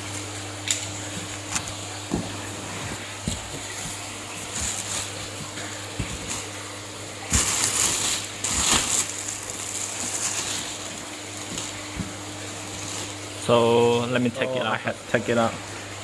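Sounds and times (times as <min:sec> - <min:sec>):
packaging clicks and rustles: 0:07.2 - 0:13.2.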